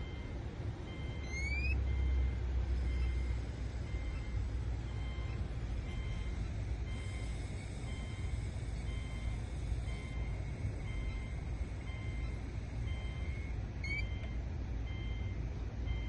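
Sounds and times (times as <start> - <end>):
car engine rumble: 0.0 - 16.0
car warning chime beeps: 0.0 - 16.0
short rising chirp: 1.0 - 1.9.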